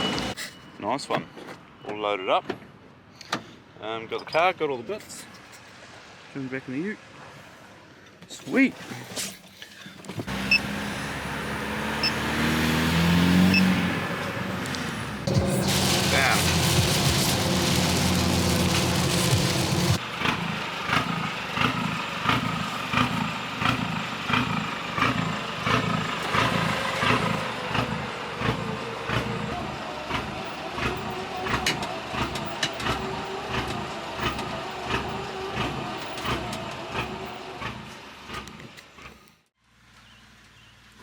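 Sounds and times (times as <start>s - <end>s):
vehicle drivetrain hum: 10.1s - 40.1s
trailer thumping and clatter: 15.2s - 38.6s.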